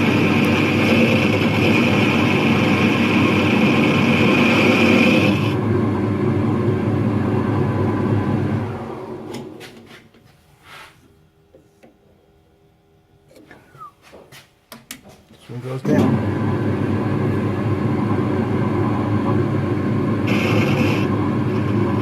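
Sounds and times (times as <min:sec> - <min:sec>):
power tool high whine: 0:00.0 - 0:05.6, 0:19.8 - 0:22.0
machine winding down: 0:00.0 - 0:09.5, 0:15.9 - 0:22.0.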